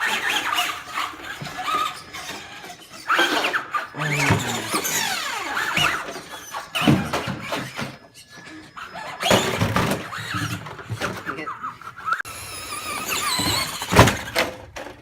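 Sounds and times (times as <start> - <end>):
rc car motors whining: 0.0 - 15.0
tyre and chassis noise: 12.0 - 15.0.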